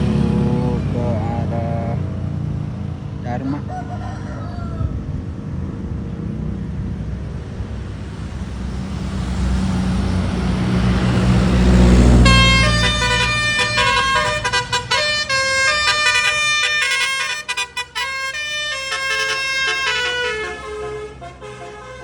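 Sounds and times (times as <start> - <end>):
bus engine rumble: 0.0 - 22.0
multi-tone horn playing tune: 12.2 - 22.0.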